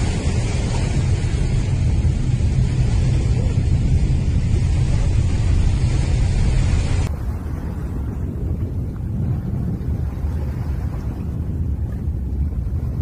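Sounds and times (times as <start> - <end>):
loud low rumbling: 0.0 - 10.0.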